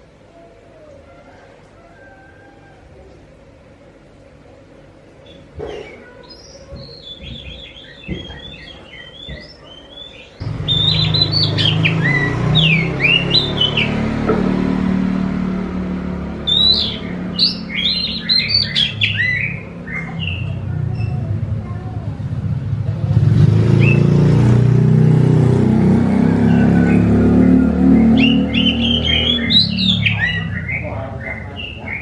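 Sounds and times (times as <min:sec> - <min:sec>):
bird chirping and whistling: 0:06.3 - 0:14.1, 0:16.4 - 0:21.2, 0:23.7 - 0:24.1, 0:26.3 - 0:32.0.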